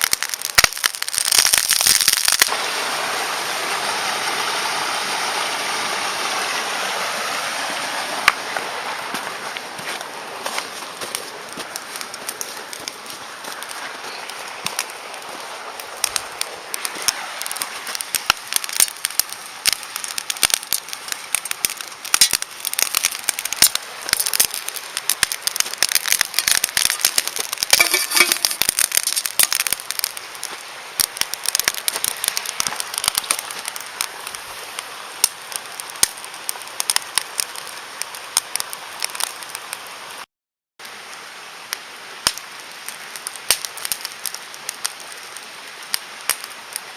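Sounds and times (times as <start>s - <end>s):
campfire crackling and popping: 0.0s - 4.5s, 5.2s - 40.2s, 40.8s - 46.9s.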